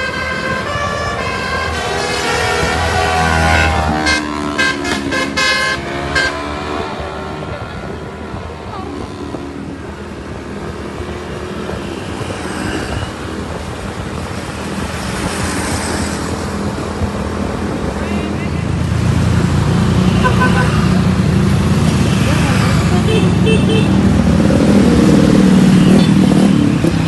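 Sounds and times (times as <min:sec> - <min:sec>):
musical air horn toots: 0:00.0 - 0:06.8
vehicle engine and road noise: 0:00.0 - 0:27.0.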